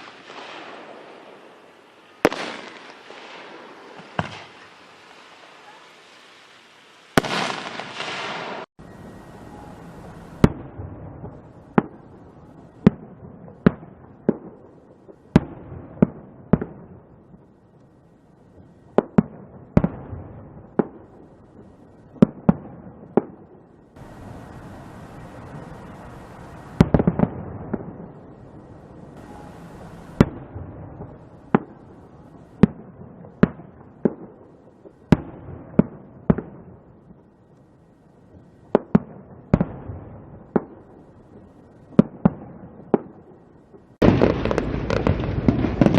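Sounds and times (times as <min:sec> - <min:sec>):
firecrackers crackling: 0:00.0 - 0:08.7, 0:24.0 - 0:45.9
fireworks banging: 0:00.0 - 0:08.7, 0:18.6 - 0:37.3, 0:38.3 - 0:45.9.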